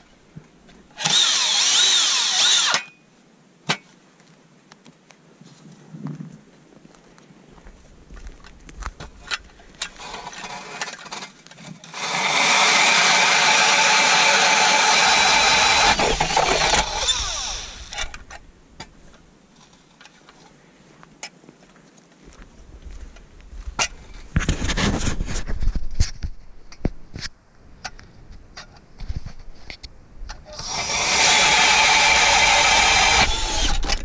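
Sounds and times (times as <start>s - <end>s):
drill auger boring into ice: 1.0s - 2.9s, 9.9s - 18.2s, 30.5s - 34.0s.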